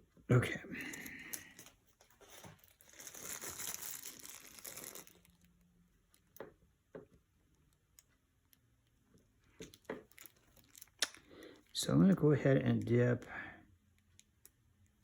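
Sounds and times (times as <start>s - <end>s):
crinkling rustle of handling: 1.0s - 6.5s, 7.7s - 13.0s.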